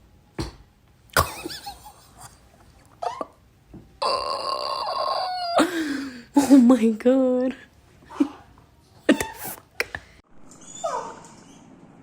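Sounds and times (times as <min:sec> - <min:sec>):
dog whining: 0:04.1 - 0:05.6, 0:10.6 - 0:11.7
dog yelping: 0:10.6 - 0:11.6.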